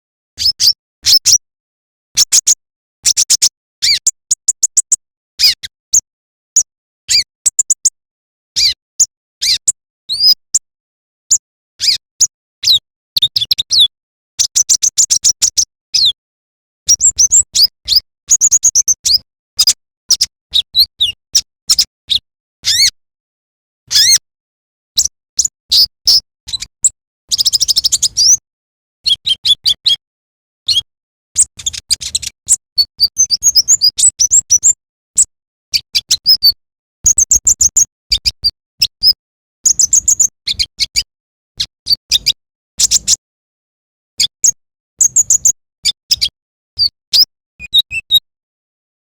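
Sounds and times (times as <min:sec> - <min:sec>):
bird chirping and trilling: 0:00.4 - 0:01.4, 0:03.1 - 0:05.7, 0:06.6 - 0:07.9, 0:08.6 - 0:08.8, 0:09.4 - 0:10.4, 0:11.8 - 0:12.0, 0:22.7 - 0:22.9, 0:23.9 - 0:24.2, 0:27.3 - 0:28.4, 0:30.7 - 0:34.8, 0:39.0 - 0:43.2, 0:45.0 - 0:48.2.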